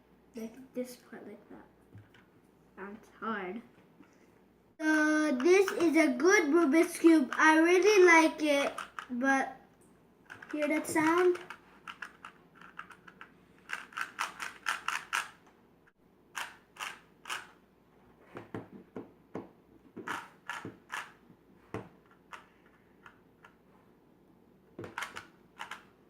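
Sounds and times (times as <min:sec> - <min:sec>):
puzzle cube clicking: 0:08.6 - 0:09.1, 0:10.3 - 0:15.4, 0:16.4 - 0:17.6, 0:20.0 - 0:21.2, 0:24.8 - 0:25.9.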